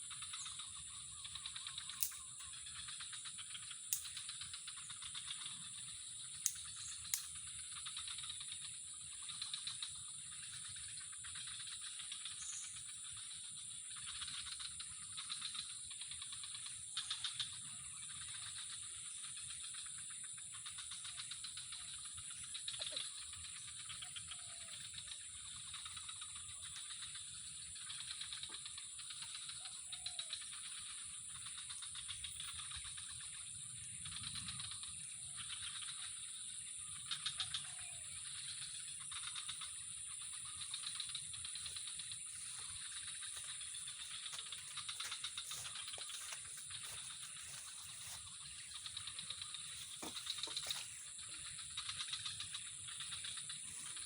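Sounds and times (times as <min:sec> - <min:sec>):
insects trilling: 0:00.0 - 0:54.0
sharp clicks: 0:01.9 - 0:02.5, 0:03.9 - 0:04.2.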